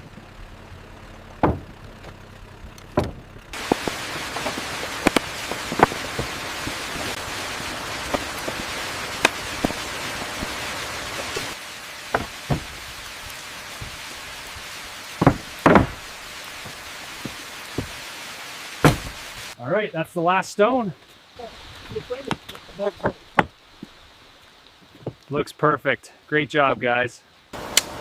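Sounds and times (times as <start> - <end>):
stones knocking: 1.4 - 2.1, 2.9 - 7.2, 8.0 - 10.6, 11.2 - 12.9, 13.8 - 14.0, 15.2 - 18.0, 18.8 - 19.2
rain hiss: 3.5 - 28.0.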